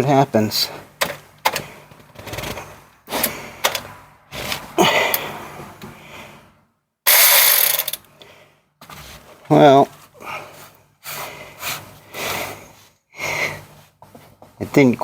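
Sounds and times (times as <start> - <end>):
cordless ratchet motor straining: 7.1 - 8.0.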